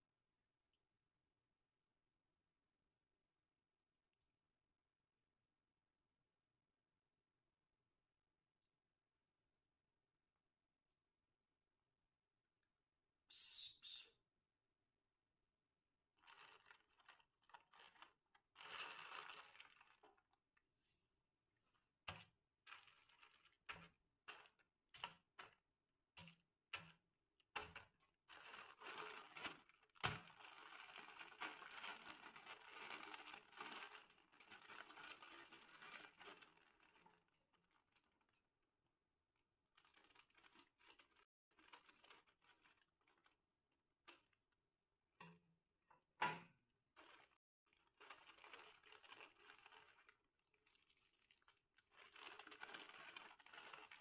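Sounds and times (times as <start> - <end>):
plastic packet crinkling: 16.2 - 20.4, 22.7 - 25.6, 27.6 - 38.4, 39.7 - 43.4, 47.0 - 54.0.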